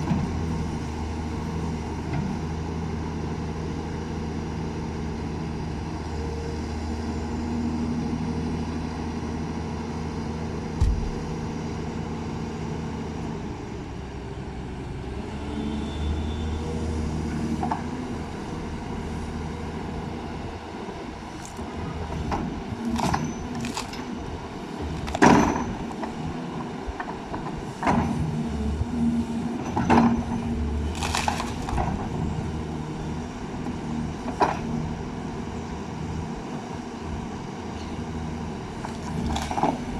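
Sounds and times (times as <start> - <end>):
diesel engine running: 0.0 - 15.4, 16.6 - 39.9
bucket breaking tree roots: 22.9 - 24.1, 30.8 - 32.0.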